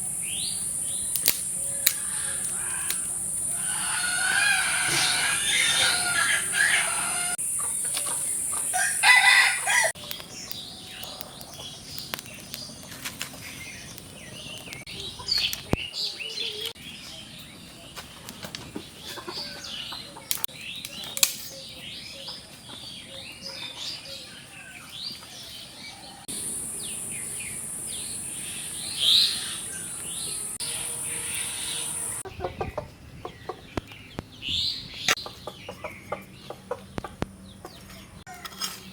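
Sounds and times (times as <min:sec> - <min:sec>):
chickens clucking: 0:01.9 - 0:09.9, 0:18.8 - 0:20.5, 0:30.6 - 0:34.3, 0:34.9 - 0:38.5.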